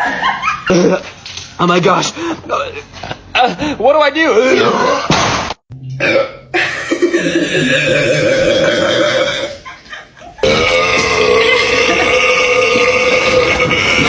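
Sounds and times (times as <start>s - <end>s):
person burping: 6.0s - 9.6s, 10.4s - 14.0s.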